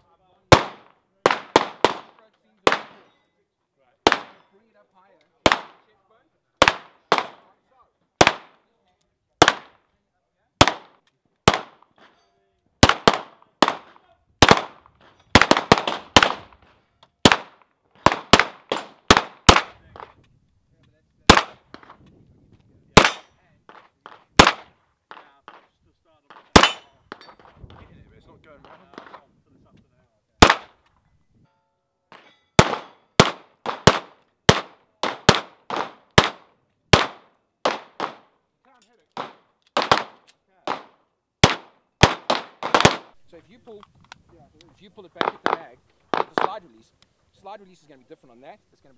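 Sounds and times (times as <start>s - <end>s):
pistol shots with echo: 0.5s - 3.1s, 4.0s - 4.5s, 5.4s - 5.9s, 6.6s - 7.5s, 8.2s - 8.6s, 9.4s - 9.8s, 10.6s - 12.0s, 12.8s - 16.6s, 17.2s - 20.2s, 21.3s - 22.0s, 23.0s - 25.7s, 26.3s - 27.5s, 30.4s - 30.8s, 32.1s - 38.3s, 39.1s - 43.2s, 45.2s - 46.6s.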